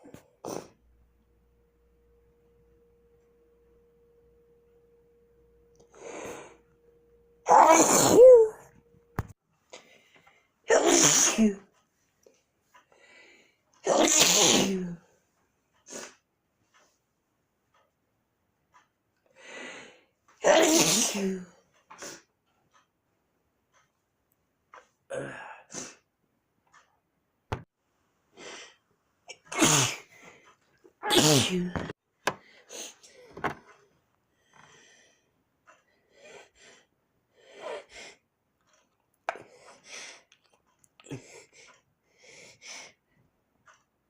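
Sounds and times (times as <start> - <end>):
person sneezing: 7.5 - 8.6, 10.7 - 11.6, 13.8 - 15.0, 20.4 - 21.5, 29.3 - 30.1, 31.0 - 31.9.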